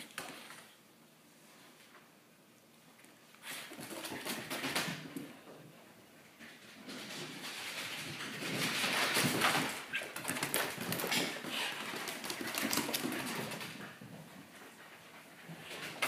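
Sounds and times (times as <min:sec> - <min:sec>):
animals scuffling: 0:06.3 - 0:16.0
claws clicking on floor: 0:06.8 - 0:13.9.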